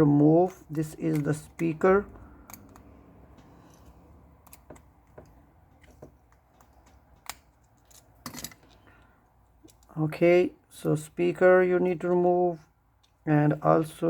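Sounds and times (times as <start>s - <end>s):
small tools clicking on phone parts: 0.4s - 9.9s.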